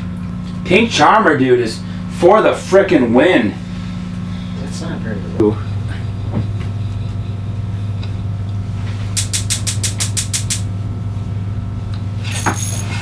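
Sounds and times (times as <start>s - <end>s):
low mechanical hum: 0.0s - 13.0s
rapid sharp clicks: 9.2s - 10.7s.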